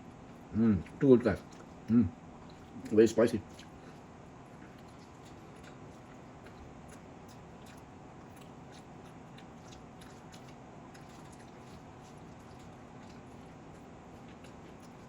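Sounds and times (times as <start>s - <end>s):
person chewing with mouth clicks: 0.4s - 15.0s.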